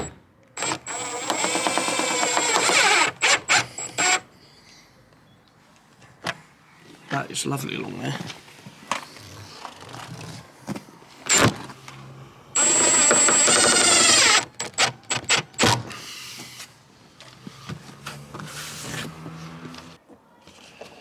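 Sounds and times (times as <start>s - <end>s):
power drill whining: 0.0s - 4.3s, 11.3s - 16.2s.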